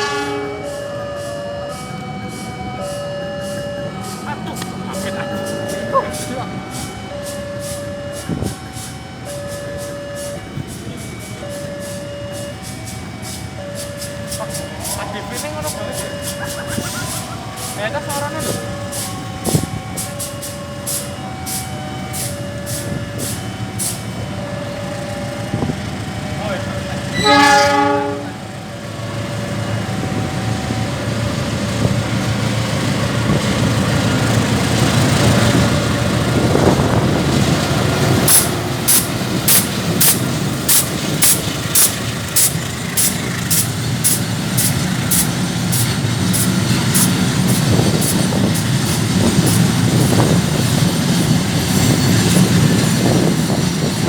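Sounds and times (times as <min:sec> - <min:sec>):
locomotive horn blast: 0:00.0 - 0:08.6, 0:26.9 - 0:28.8
diesel locomotive running: 0:00.0 - 0:54.0
sharp hissing puffs: 0:38.2 - 0:49.8.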